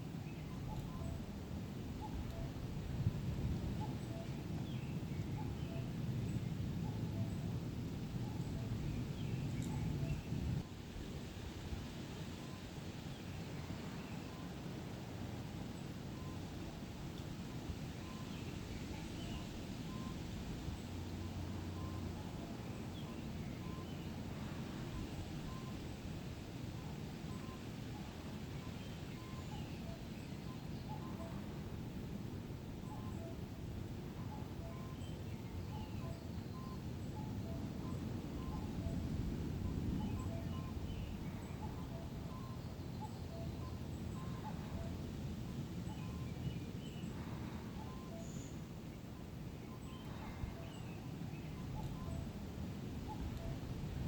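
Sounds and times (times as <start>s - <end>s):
low wind noise: 0.0s - 54.0s
faint bird chirps: 0.2s - 1.3s, 2.0s - 2.6s, 3.7s - 7.5s, 8.2s - 10.7s, 16.1s - 16.8s, 17.8s - 25.9s, 26.7s - 31.6s, 32.7s - 53.7s.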